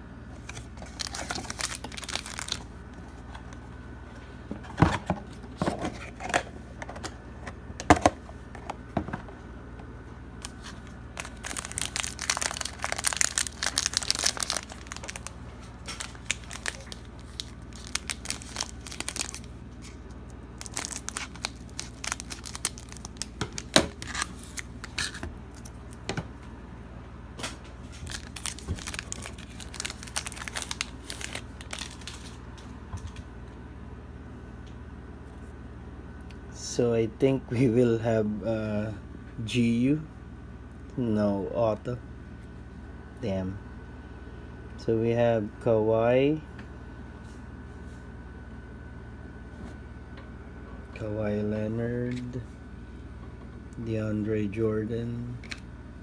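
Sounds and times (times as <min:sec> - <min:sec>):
wrappers tearing and crinkling: 0:00.4 - 0:02.7, 0:10.4 - 0:20.0, 0:20.6 - 0:25.9, 0:27.9 - 0:32.4.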